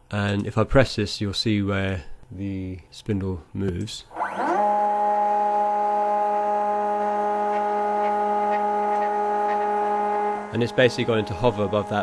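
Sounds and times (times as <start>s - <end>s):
stepper motors whining: 4.1s - 12.0s.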